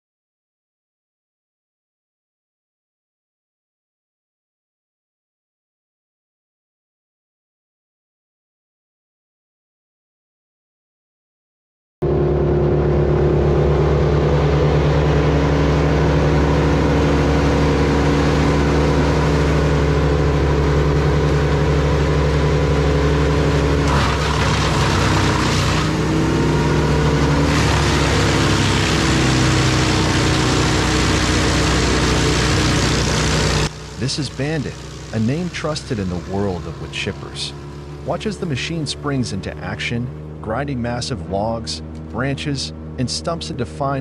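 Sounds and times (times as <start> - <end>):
wood chipper engine: 12.0 - 44.0
chipping drum grinding: 23.2 - 34.5.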